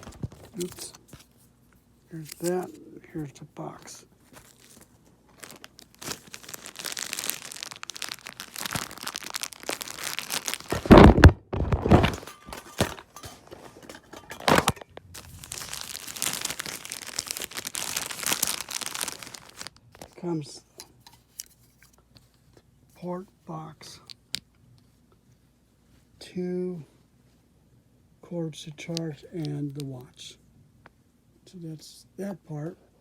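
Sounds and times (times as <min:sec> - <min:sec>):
packaging crinkling and rustling: 0:00.0 - 0:01.5, 0:02.1 - 0:22.0.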